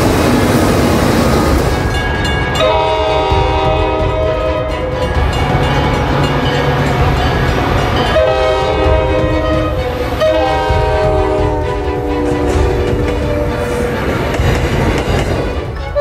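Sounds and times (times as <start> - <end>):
moving train rumble: 0.0 - 16.0
train horn blasts: 2.6 - 5.8, 7.4 - 13.9.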